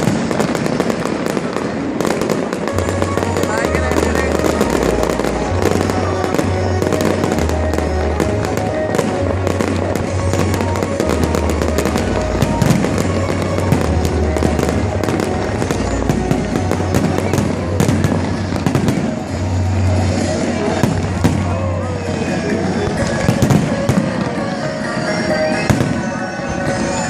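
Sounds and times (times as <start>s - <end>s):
fireworks crackling and popping: 0.0s - 27.0s.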